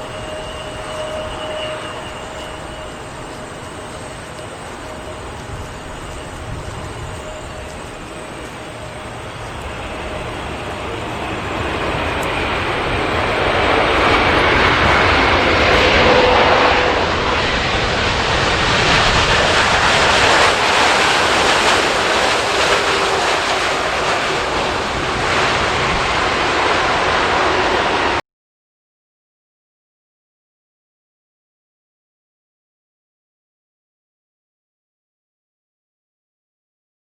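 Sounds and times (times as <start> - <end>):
jet engines roaring: 0.0 - 28.2.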